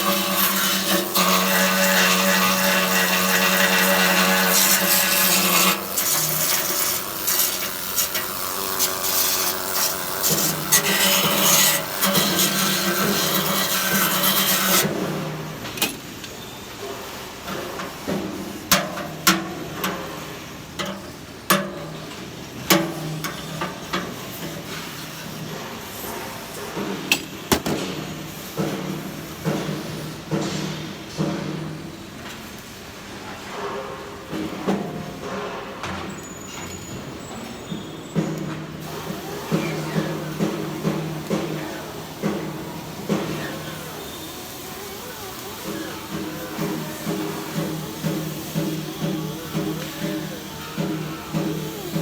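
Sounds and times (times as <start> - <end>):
power tool on metal: 0.0 - 15.1, 38.2 - 52.0.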